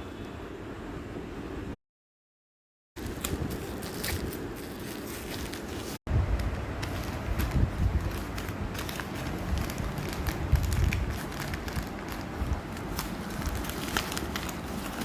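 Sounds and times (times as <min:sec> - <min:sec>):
rumbling handling noise: 0:03.0 - 0:15.0.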